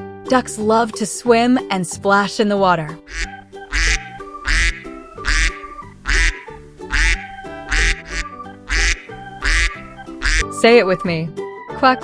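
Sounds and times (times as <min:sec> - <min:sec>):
cheerful background music: 0:00.0 - 0:12.0
duck quacking: 0:03.1 - 0:10.4.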